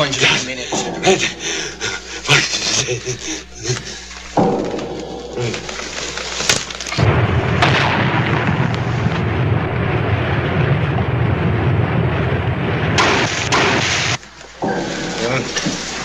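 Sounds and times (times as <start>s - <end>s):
sharp cracks: 4.2s - 15.6s
deep sustained rumble: 7.0s - 13.5s.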